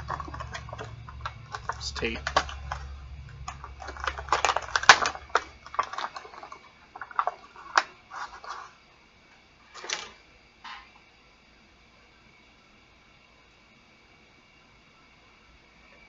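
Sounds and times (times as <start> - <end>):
plastic packaging crackling: 0.0 - 8.8.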